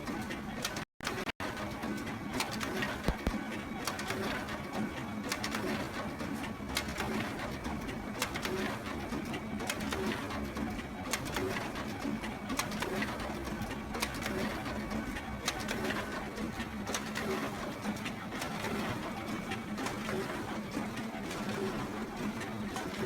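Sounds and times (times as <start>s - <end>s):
photocopier humming: 2.9s - 3.4s
photocopier clicking: 3.0s - 3.4s.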